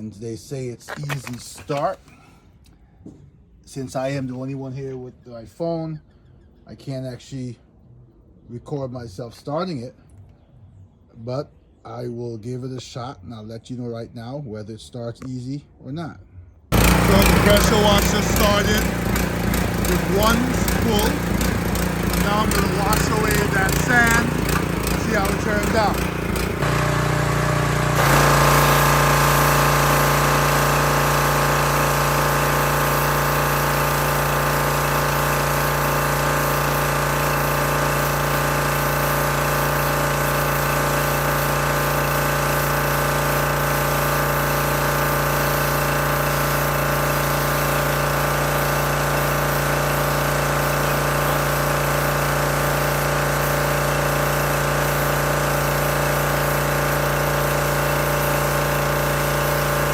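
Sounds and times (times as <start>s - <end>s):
high-pressure water spray hissing: 16.7s - 59.9s
pressure washer engine running: 16.7s - 59.9s.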